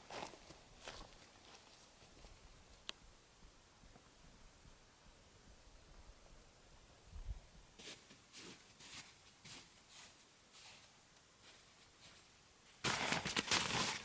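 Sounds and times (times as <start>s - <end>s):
faint footsteps: 0.0s - 2.8s, 7.8s - 12.3s.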